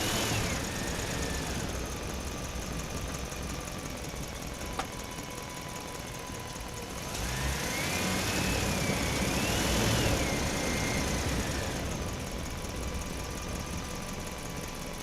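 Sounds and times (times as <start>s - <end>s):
truck engine driving: 0.0s - 15.0s.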